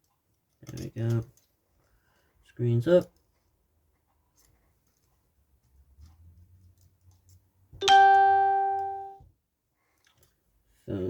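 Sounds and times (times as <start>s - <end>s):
bright bell-like ding: 7.8s - 9.2s.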